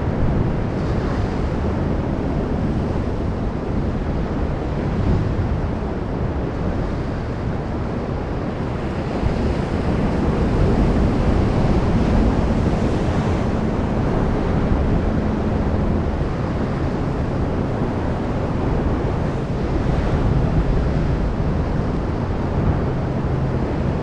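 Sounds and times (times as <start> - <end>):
sea waves washing ashore: 0.0 - 24.0.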